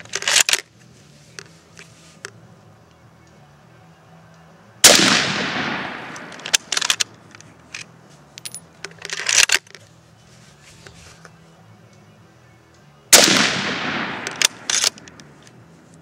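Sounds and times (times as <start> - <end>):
rifle bolt clicks and scraping: 0.0 - 3.4, 6.0 - 11.4, 14.1 - 16.0
rifle shot echoing: 4.8 - 6.9, 13.1 - 15.1.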